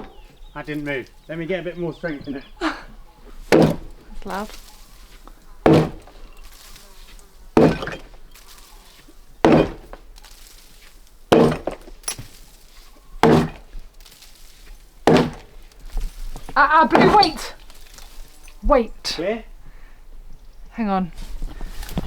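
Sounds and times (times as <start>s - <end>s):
sledgehammer strikes with ring: 7.6s - 8.1s, 9.5s - 10.0s, 13.2s - 13.6s.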